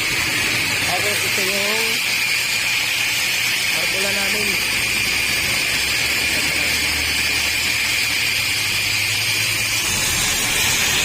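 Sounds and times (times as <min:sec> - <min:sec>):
power tool high whine: 0:00.0 - 0:11.0.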